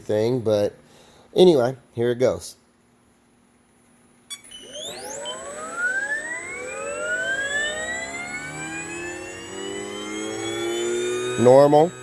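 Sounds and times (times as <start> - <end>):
model helicopter rotors whining: 4.3 - 12.0.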